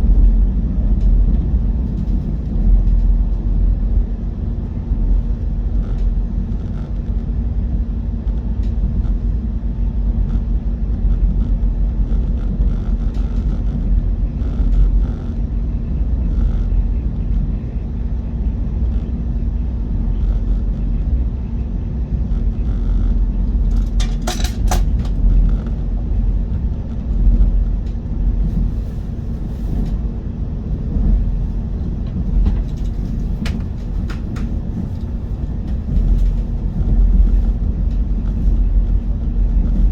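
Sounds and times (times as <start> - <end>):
train rumbling: 0.0 - 39.9.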